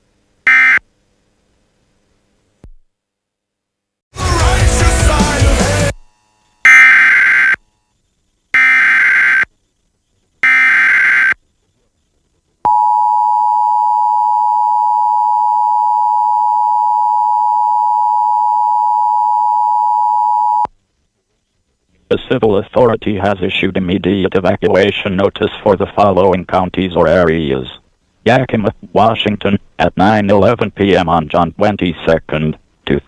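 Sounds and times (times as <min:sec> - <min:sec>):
alert data bursts: 0:06.6 - 0:09.5, 0:10.4 - 0:11.4.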